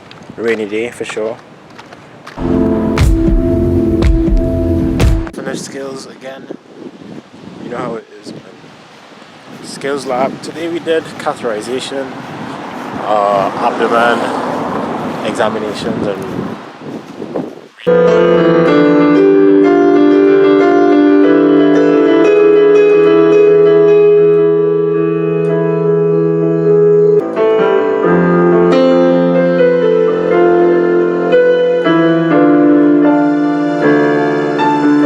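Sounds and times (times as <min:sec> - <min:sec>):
piano chords and notes: 0:02.4 - 0:05.4, 0:17.8 - 0:35.0.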